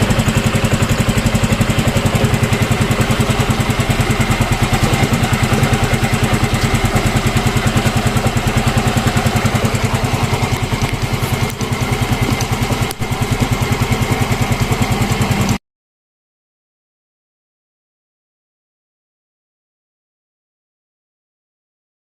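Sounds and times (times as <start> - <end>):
scooter engine idling: 0.0 - 15.6.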